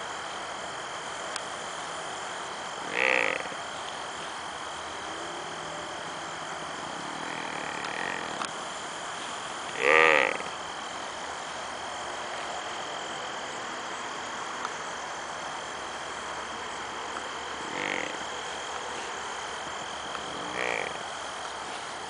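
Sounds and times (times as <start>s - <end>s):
deer whining: 9.7s - 10.5s, 17.6s - 18.2s, 20.2s - 21.0s.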